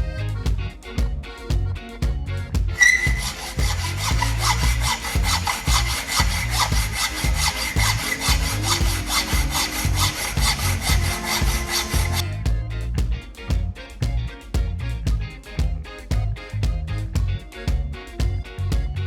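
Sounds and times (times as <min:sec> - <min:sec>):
hand saw sawing: 0:02.8 - 0:12.3.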